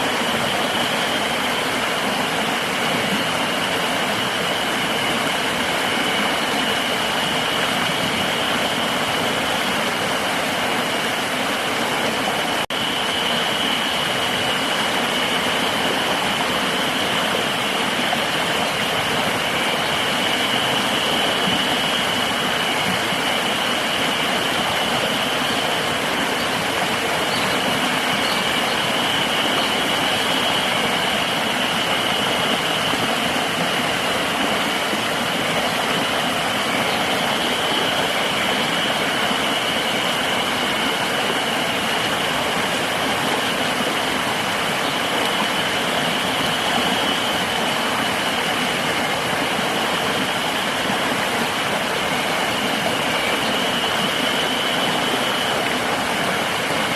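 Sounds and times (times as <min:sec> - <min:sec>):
river flowing: 0:00.0 - 0:56.9
high insect drone: 0:12.5 - 0:56.9.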